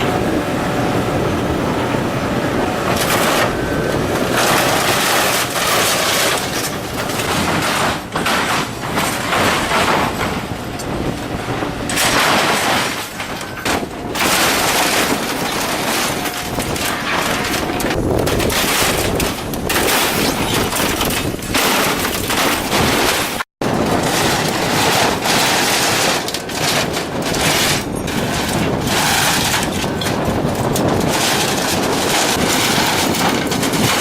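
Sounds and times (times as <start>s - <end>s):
machinery shredding scrap metal: 0.0s - 34.0s
metal tearing cracks: 2.8s - 34.0s.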